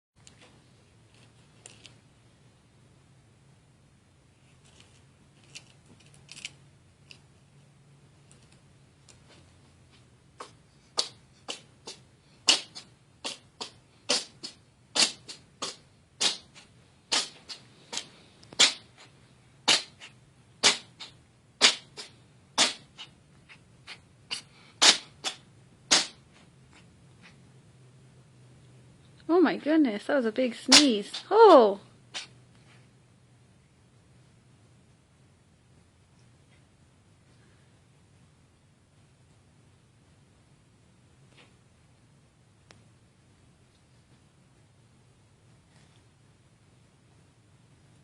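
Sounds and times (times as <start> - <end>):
cat sneezing: 10.4 - 19.1, 19.7 - 26.2, 32.1 - 32.4.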